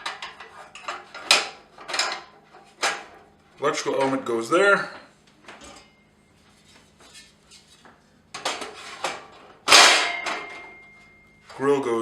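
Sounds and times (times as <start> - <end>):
metal grill parts knocking and scraping: 0.0 - 3.2, 8.4 - 10.8
metallic clang: 9.7 - 11.4.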